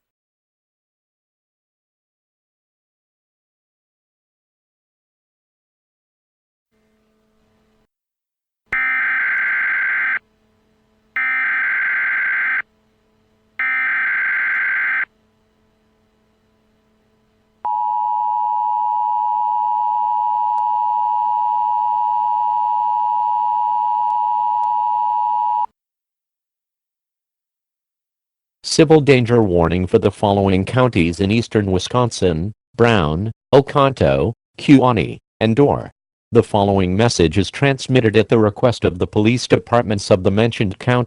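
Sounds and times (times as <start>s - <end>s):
digital header data bursts: 8.8s - 10.2s, 11.2s - 12.6s, 13.6s - 15.0s
two-tone alert signal: 8.8s - 10.2s, 11.2s - 12.6s, 13.6s - 15.0s.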